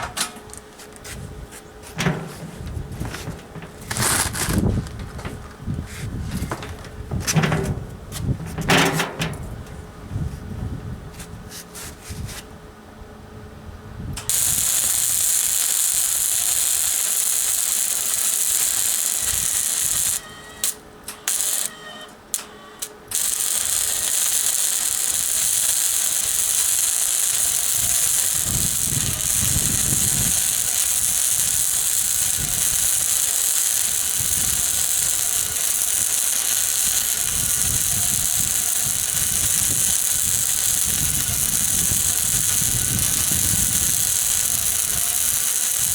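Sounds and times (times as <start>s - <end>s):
sizzling welding arc: 14.3s - 22.4s, 23.0s - 45.9s.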